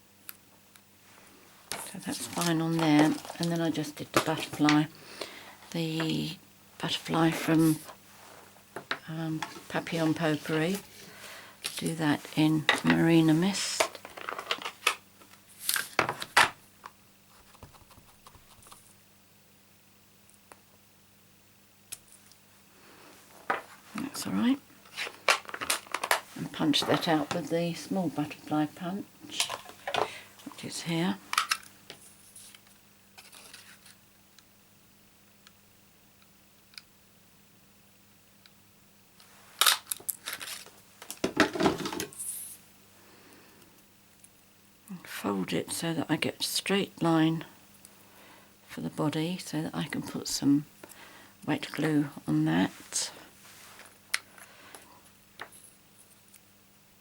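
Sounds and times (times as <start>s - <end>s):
paper crinkling: 1.7s - 4.7s, 24.8s - 27.5s, 32.2s - 34.0s, 39.5s - 41.2s.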